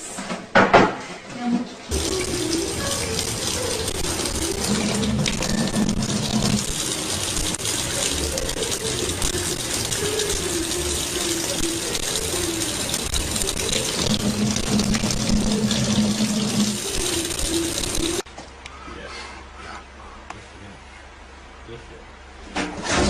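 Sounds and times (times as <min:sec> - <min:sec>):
water running: 0:01.9 - 0:18.3.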